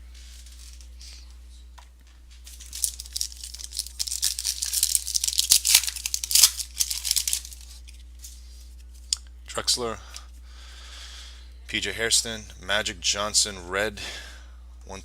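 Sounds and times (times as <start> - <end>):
card pack wrapper tearing: 2.5 - 8.0.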